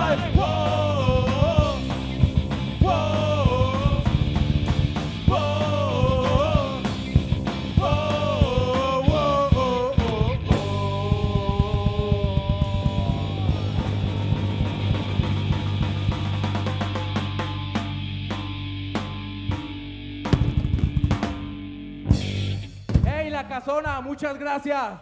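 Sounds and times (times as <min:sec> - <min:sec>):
punk rock band playing live: 0:00.0 - 0:23.3
drums: 0:00.0 - 0:25.0
bending electric guitar lines: 0:13.0 - 0:22.9.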